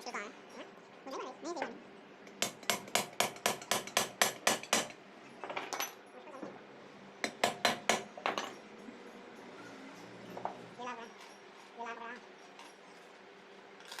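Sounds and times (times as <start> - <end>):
hammer striking metal: 2.4 - 5.0, 7.2 - 8.6.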